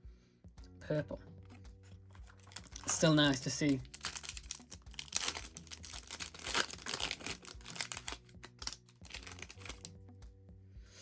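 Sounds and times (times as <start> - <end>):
cards being handled: 1.5 - 9.9
wrapper crinkling and tearing: 2.1 - 9.9.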